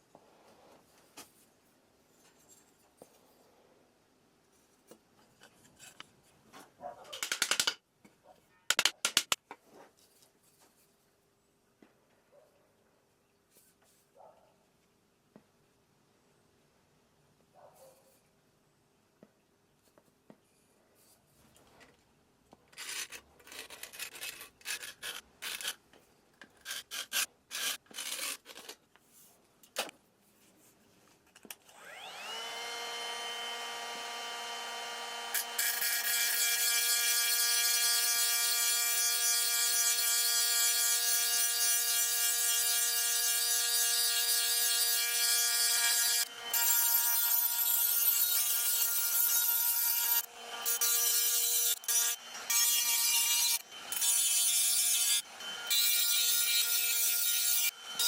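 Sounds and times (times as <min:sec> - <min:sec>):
power tool whine: 0:31.7 - 0:38.8, 0:45.6 - 0:58.0.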